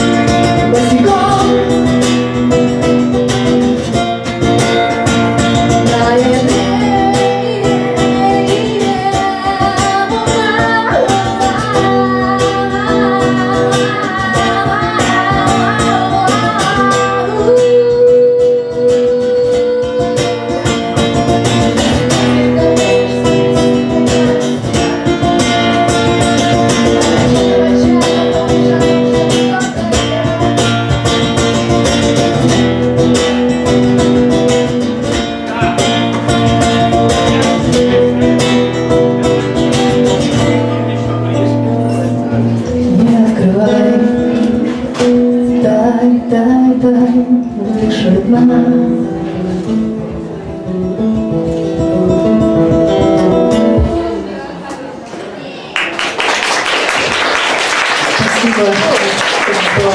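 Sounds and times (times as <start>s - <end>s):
person singing wordless melody: 0.0s - 2.3s, 5.7s - 20.8s, 42.7s - 50.1s
acoustic guitar playing: 0.0s - 55.0s, 55.9s - 59.9s.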